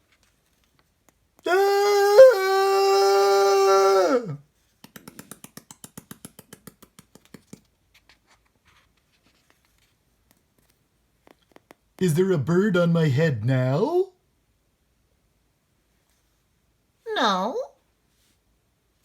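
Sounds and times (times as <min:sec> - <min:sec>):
man's long high cry: 0:01.5 - 0:04.4.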